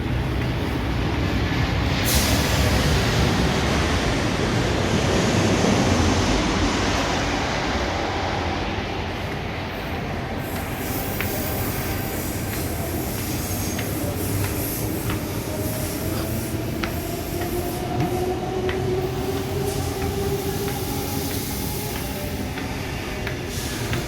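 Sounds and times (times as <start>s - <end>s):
train rumbling past: 0.0s - 24.0s.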